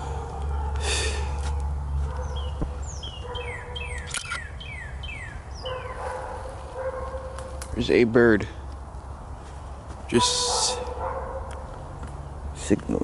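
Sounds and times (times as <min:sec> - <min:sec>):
bird chirping: 0:01.9 - 0:07.8.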